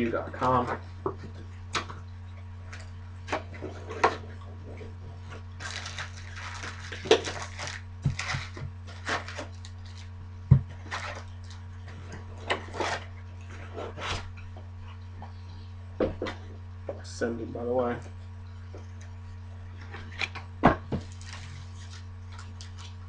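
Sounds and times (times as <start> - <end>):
rustling foil wrappers: 5.6 - 10.2, 21.0 - 23.0.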